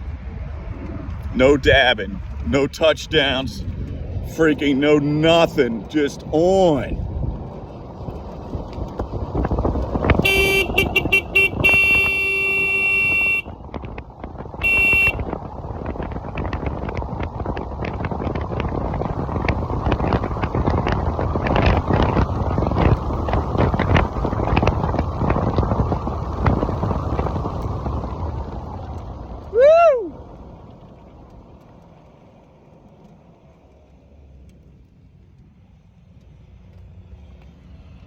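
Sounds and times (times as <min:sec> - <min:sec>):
wind rushing over microphone: 0:00.0 - 0:33.7
horn sounding: 0:10.1 - 0:13.6, 0:14.6 - 0:15.3.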